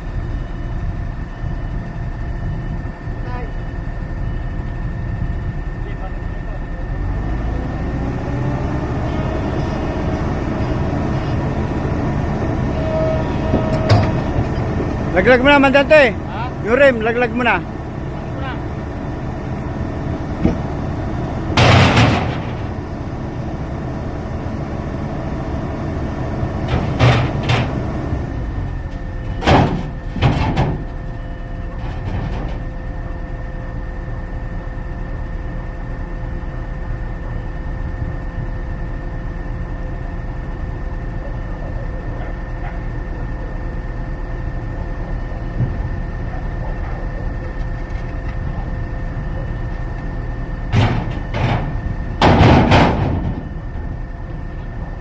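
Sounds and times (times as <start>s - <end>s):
excavator diesel engine running: 0.0s - 55.0s
sharp metal clanks and bangs: 21.6s - 22.6s, 50.7s - 53.5s.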